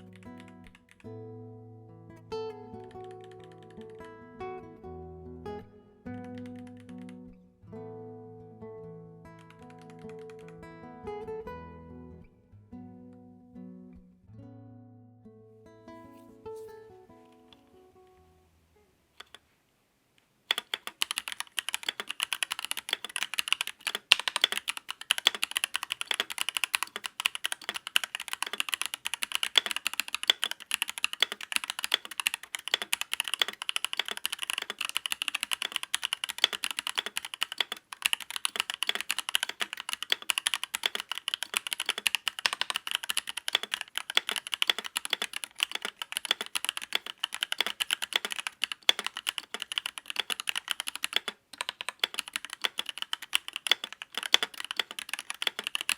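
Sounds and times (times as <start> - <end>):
mechanical keyboard typing: 0.0 - 1.1, 2.7 - 4.1, 6.1 - 7.3, 9.4 - 10.6, 19.2 - 19.4, 20.5 - 55.9.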